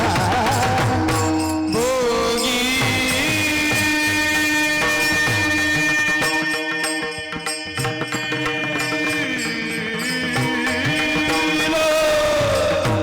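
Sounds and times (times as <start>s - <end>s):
person singing: 0.0s - 5.3s, 8.1s - 13.0s
fast rhythmic percussion: 0.0s - 13.0s
harmonium notes: 0.0s - 13.0s.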